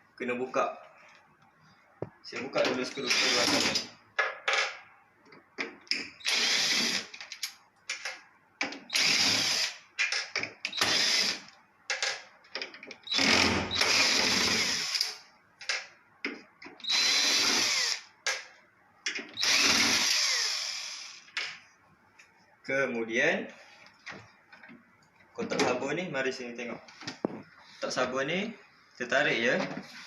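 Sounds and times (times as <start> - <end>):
power screwdriver whirring: 6.2 - 7.1, 8.9 - 9.8, 10.7 - 11.4, 13.1 - 15.2, 16.8 - 18.0, 19.4 - 21.2.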